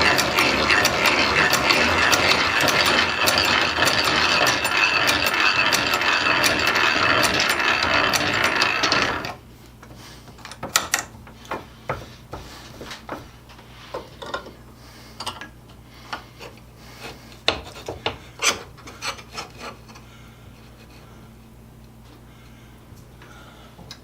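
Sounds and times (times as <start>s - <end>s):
metal tools scraping: 0.0s - 9.4s
faint steady hum: 0.0s - 24.0s.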